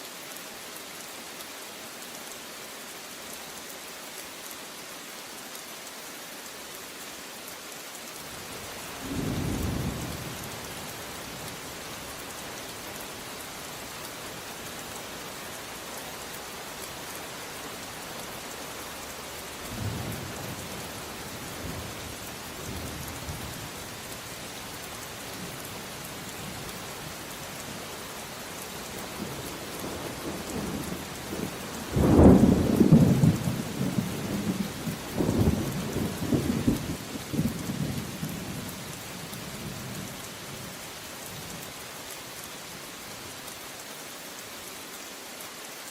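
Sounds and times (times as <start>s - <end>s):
heavy rain hissing: 0.0s - 45.9s
thunder rumbling: 31.8s - 38.5s.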